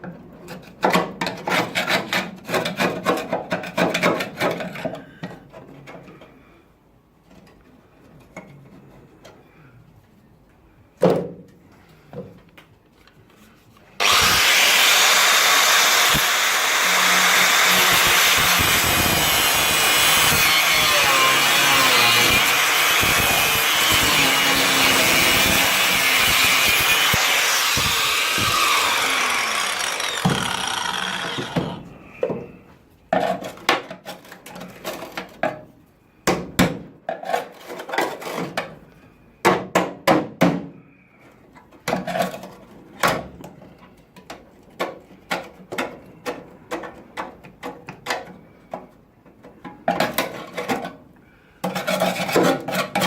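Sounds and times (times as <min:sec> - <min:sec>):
angle grinder grinding steel: 0:14.0 - 0:31.9.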